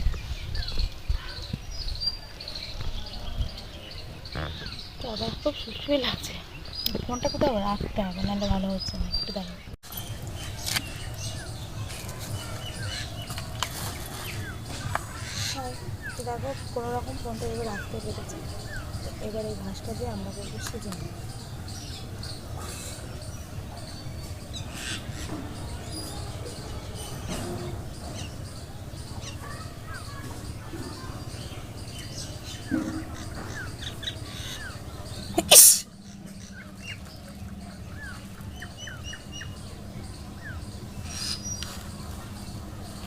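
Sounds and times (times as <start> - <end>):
small birds chirping: 0.0 - 43.0
woman sneezing: 35.4 - 35.9.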